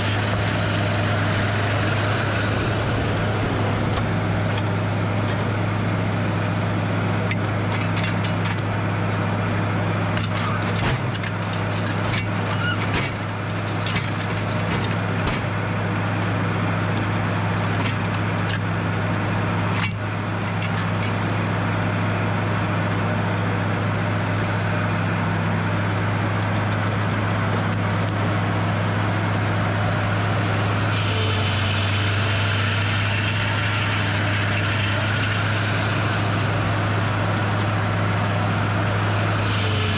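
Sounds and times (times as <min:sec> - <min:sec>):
high steady whine: 0:00.0 - 0:07.9
sawmill engine running: 0:00.0 - 0:39.9.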